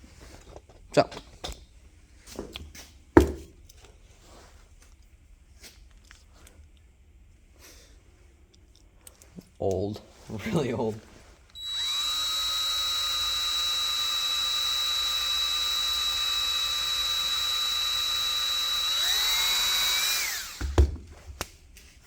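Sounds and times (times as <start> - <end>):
power tool wire brush whining: 11.6 - 20.8.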